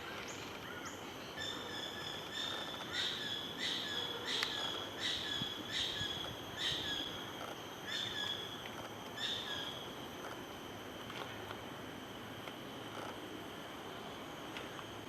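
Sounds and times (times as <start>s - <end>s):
bird calling: 0.0s - 10.0s.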